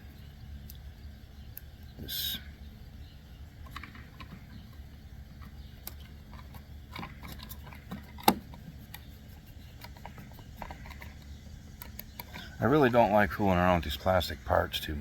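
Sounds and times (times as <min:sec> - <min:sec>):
light clicks of plastic parts: 0:05.4 - 0:12.5.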